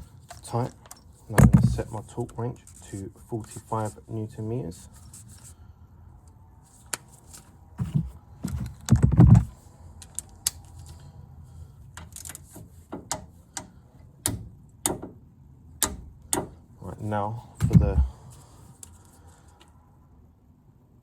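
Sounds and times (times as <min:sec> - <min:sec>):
heavy thump: 0:01.4 - 0:01.9, 0:07.8 - 0:09.5, 0:17.6 - 0:18.2.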